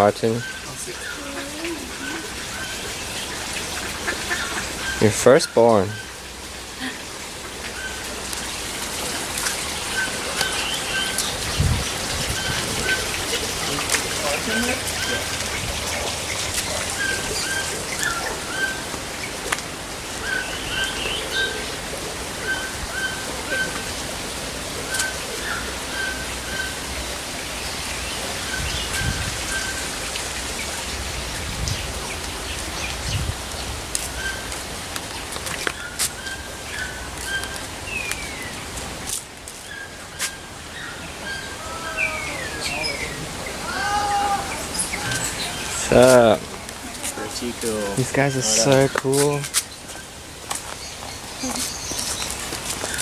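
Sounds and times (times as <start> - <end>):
rain-like hiss: 0.0 - 53.0
sweeping calls: 7.7 - 19.4, 20.1 - 24.1, 39.6 - 53.0.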